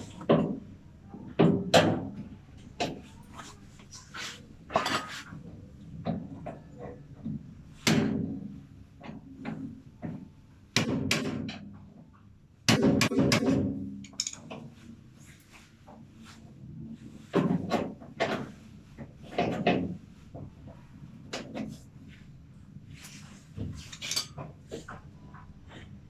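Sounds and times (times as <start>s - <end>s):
hard parts and tools clattering: 14.0s - 14.6s, 23.8s - 24.4s.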